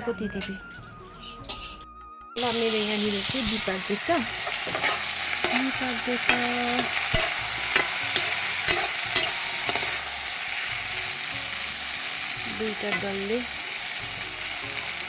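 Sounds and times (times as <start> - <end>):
utensil tapping and scraping pan: 1.2 - 1.9, 4.4 - 10.0
vegetables sizzling in a pan: 2.4 - 15.0.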